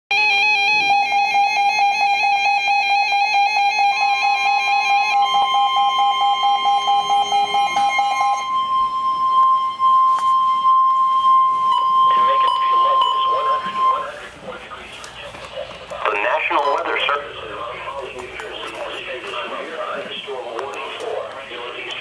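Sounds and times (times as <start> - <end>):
fast electronic beeping alarm: 0.1 - 14.3
steady alarm tone: 0.1 - 21.8.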